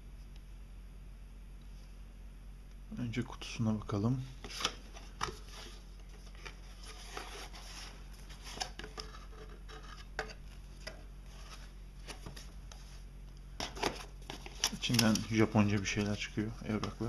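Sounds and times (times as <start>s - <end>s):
cardboard box rustling: 4.4s - 13.0s, 13.6s - 17.0s.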